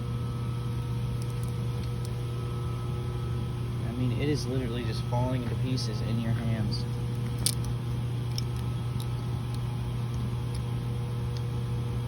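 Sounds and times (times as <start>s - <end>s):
steady low hum: 0.0s - 12.0s
loose metal pieces clicking: 1.2s - 2.2s, 7.1s - 10.7s.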